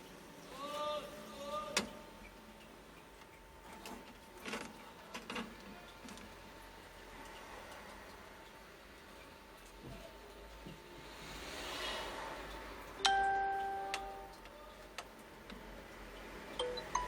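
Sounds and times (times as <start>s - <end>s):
light clicks and taps: 13.9s - 16.3s.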